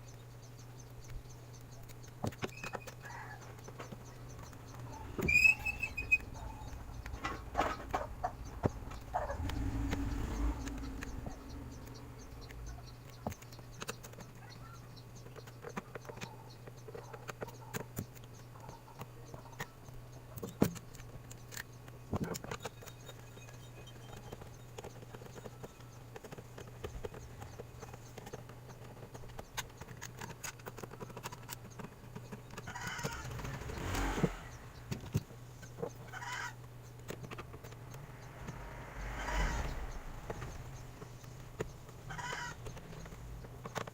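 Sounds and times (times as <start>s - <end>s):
scraping: 2.4s - 13.7s
steady low hum: 3.0s - 13.8s.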